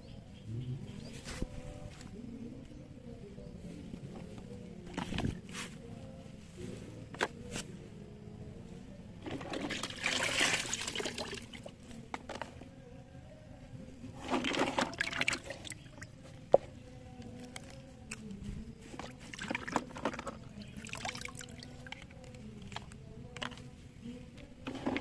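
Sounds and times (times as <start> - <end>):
water pouring and splashing: 9.3 - 11.7, 14.3 - 15.8, 19.3 - 21.8.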